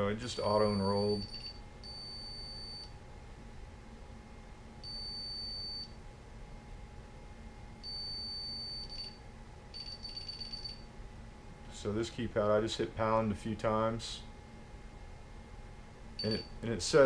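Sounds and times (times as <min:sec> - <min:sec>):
alarm keypad beeps: 0:01.2 - 0:02.9, 0:04.8 - 0:05.9, 0:07.8 - 0:09.2, 0:09.8 - 0:10.8, 0:16.2 - 0:16.5.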